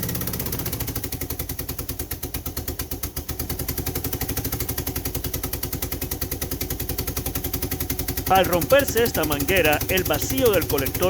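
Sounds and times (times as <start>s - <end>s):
engine cranking on starter: 3.6s - 11.0s
man talking: 8.3s - 11.0s.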